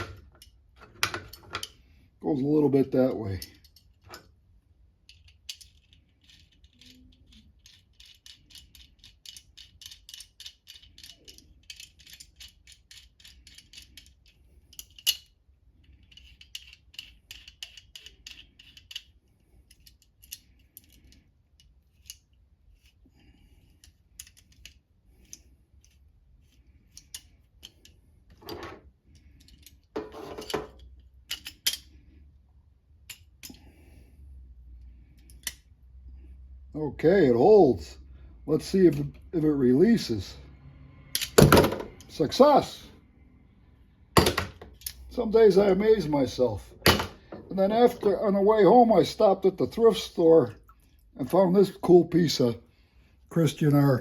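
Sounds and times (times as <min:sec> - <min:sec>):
locking pliers clicking and scraping: 0:00.0 - 0:01.9, 0:03.3 - 0:04.4, 0:05.0 - 0:32.2, 0:33.0 - 0:33.8, 0:34.8 - 0:35.8, 0:41.0 - 0:42.2, 0:44.2 - 0:45.1.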